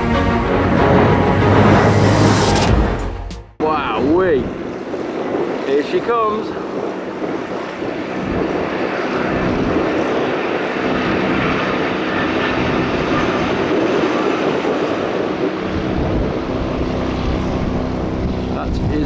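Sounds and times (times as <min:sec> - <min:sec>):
low hum: 0:00.0 - 0:05.6, 0:15.6 - 0:19.0
jet aircraft landing: 0:00.0 - 0:19.0.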